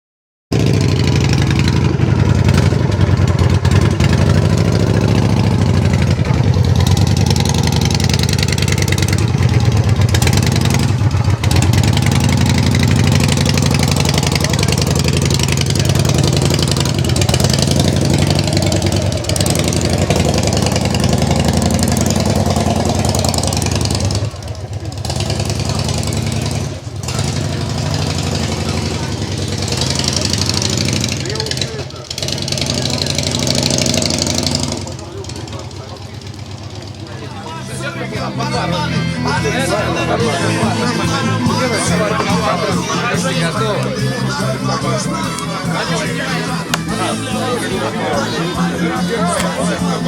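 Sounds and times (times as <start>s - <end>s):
engine running with low pulsing: 0.6s - 38.6s.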